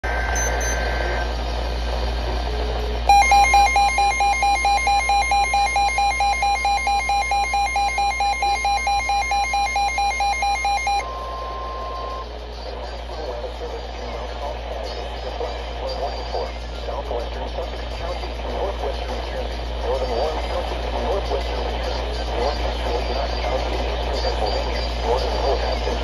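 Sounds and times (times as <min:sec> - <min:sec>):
radio hiss and hum: 0:00.0 - 0:26.0
pulsing electronic beeps: 0:00.3 - 0:01.0, 0:03.1 - 0:12.3
steady high alarm tone: 0:03.1 - 0:12.2.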